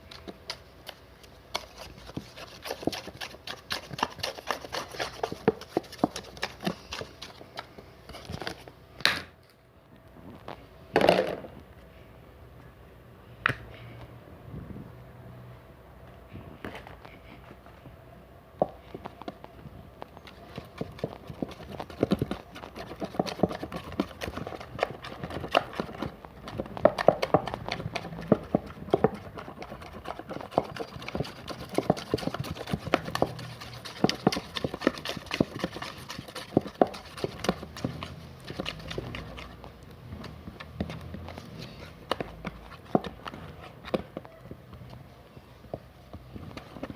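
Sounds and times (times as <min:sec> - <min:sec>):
slime squelching and popping: 0:20.6 - 0:41.1.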